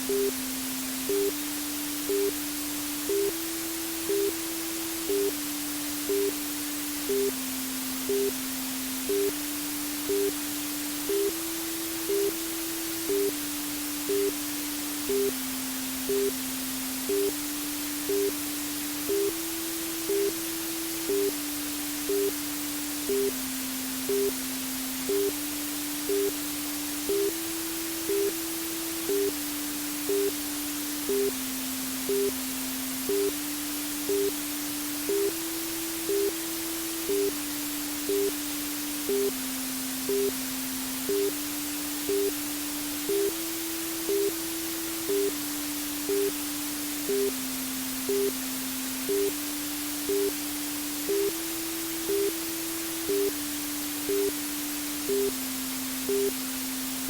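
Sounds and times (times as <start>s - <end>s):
white noise hiss: 0.0s - 57.0s
soft electronic tone: 25.1s - 25.3s, 26.1s - 26.4s, 28.1s - 28.4s, 29.1s - 29.4s, 30.1s - 30.4s, 31.1s - 31.4s, 32.1s - 32.4s, 33.1s - 33.4s, 34.1s - 34.4s, 36.1s - 36.4s, 39.1s - 39.4s, 40.1s - 40.4s, 55.1s - 55.4s, 56.1s - 56.4s.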